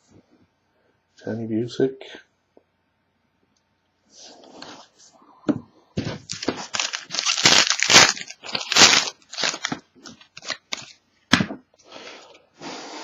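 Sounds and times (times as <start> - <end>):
foil wrapper tearing and crinkling: 6.2 - 11.0.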